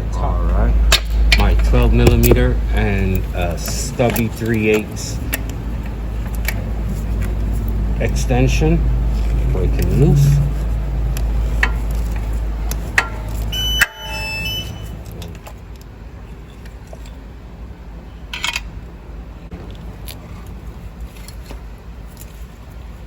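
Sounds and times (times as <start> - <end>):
low steady rumble: 0.0 - 23.0
sharp ringing clink: 13.0 - 15.0.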